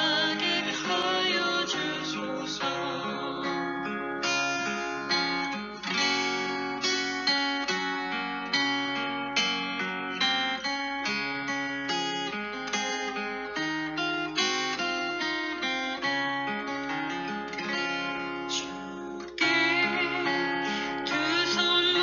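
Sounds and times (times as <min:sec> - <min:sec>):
acoustic guitar picking: 0:00.0 - 0:22.0
sustained melody with vibrato: 0:12.0 - 0:22.0.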